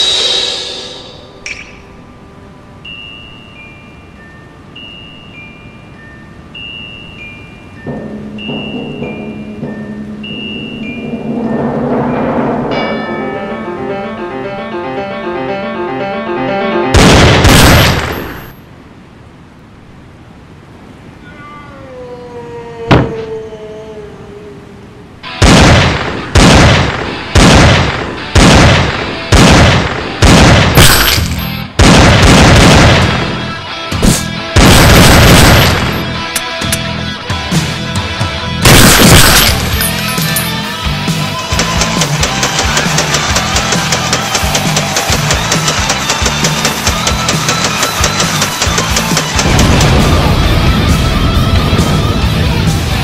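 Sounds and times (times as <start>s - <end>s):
heavy rock music: 7.9s - 18.5s, 32.8s - 53.0s
loud gunshots ringing out: 17.0s - 18.5s, 25.4s - 36.0s, 38.6s - 39.9s, 41.5s - 50.4s.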